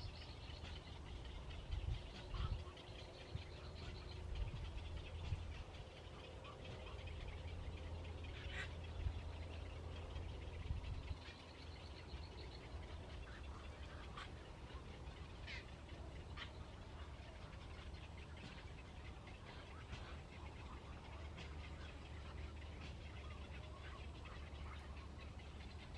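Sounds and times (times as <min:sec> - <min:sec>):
steady low rumble: 0:00.0 - 0:25.9.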